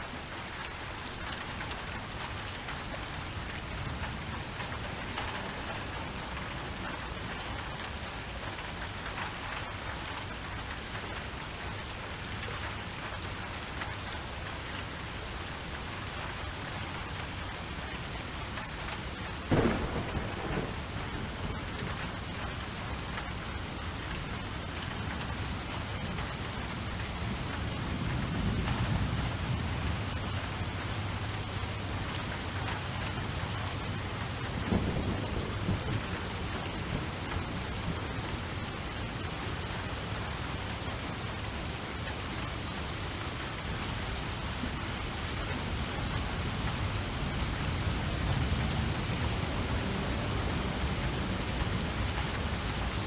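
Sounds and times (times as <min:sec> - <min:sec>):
steady rain falling: 0:00.0 - 0:53.0
thunderclap and rumbling: 0:19.4 - 0:23.3, 0:32.0 - 0:38.6.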